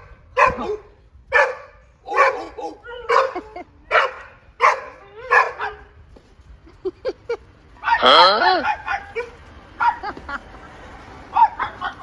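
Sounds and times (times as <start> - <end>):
dog barking: 0.0 - 5.9, 7.8 - 10.1, 11.3 - 12.0
dog crying: 2.1 - 3.7.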